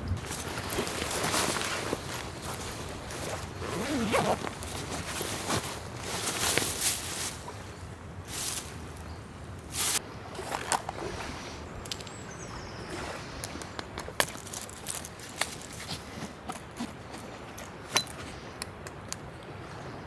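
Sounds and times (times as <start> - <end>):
rustling swishes of camping gear: 0.2 - 8.9, 9.7 - 11.6, 14.2 - 18.6.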